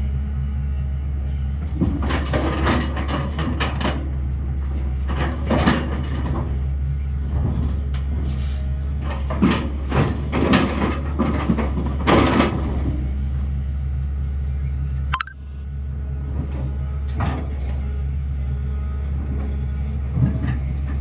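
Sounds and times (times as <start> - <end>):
excavator diesel engine running: 0.0 - 21.0
loud scraping and clanking: 1.7 - 13.5.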